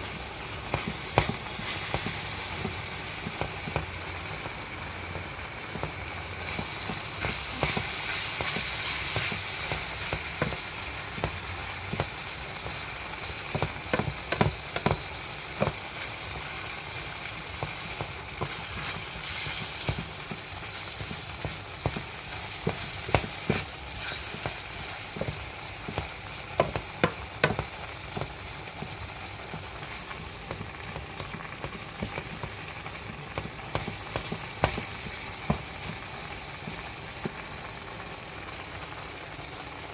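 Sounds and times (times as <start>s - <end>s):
food sizzling in a frying pan: 0.0s - 39.9s.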